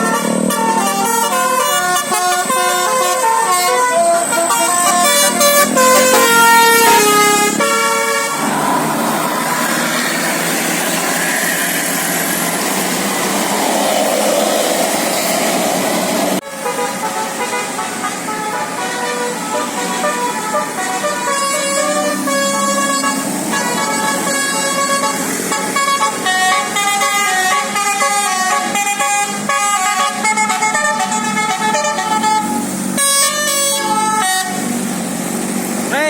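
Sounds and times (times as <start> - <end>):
musical bus horn melody: 0.0 - 8.6, 16.4 - 34.8
steady noise: 8.2 - 16.4.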